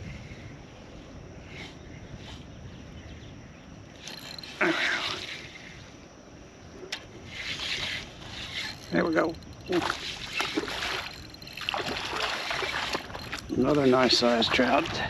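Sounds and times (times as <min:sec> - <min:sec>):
wind: 0:00.0 - 0:15.0
small waves lapping: 0:07.3 - 0:15.0.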